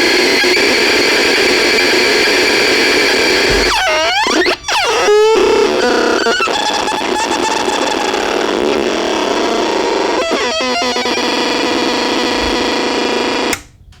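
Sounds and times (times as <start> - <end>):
distorted electronic noise: 0.0 - 13.6
falling pitch sweeps: 3.4 - 13.5.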